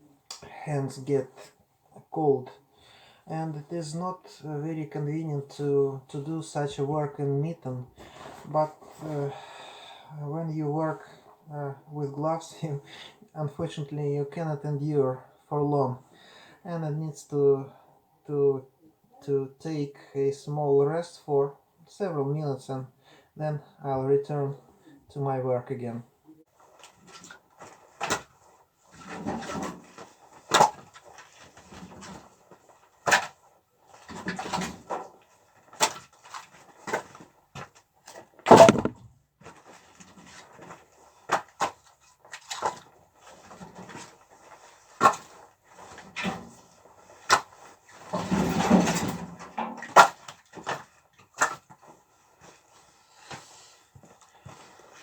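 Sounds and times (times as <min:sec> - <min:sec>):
firewood logs knocking: 0:38.5 - 0:39.0
wood rustling and scraping: 0:38.5 - 0:39.0.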